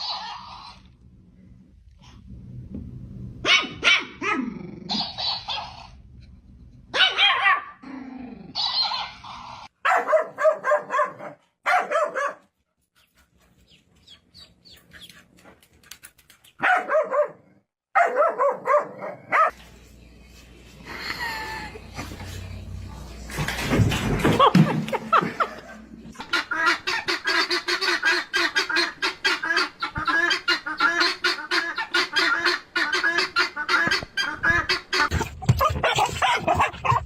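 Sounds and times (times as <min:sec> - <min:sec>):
dog barking: 0:03.4 - 0:04.4, 0:06.9 - 0:07.8, 0:09.8 - 0:12.5, 0:16.6 - 0:19.6.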